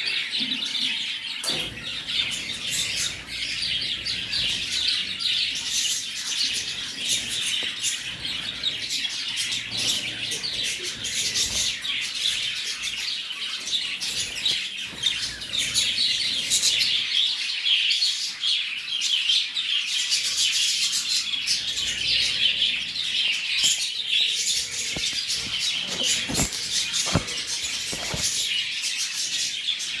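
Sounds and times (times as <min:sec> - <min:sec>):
lovebirds chirping: 0:21.0 - 0:30.0.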